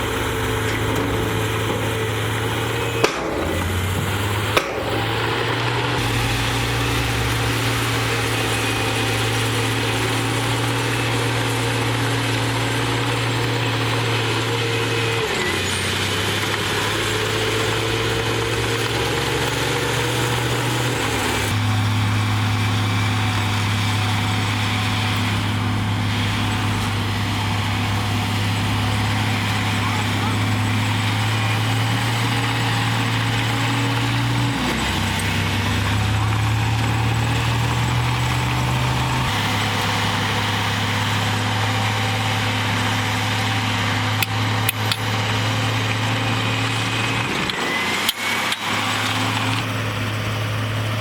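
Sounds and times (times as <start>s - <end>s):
sharp metallic knocks: 0.0s - 10.8s
bulldozer diesel engine running: 0.0s - 51.0s.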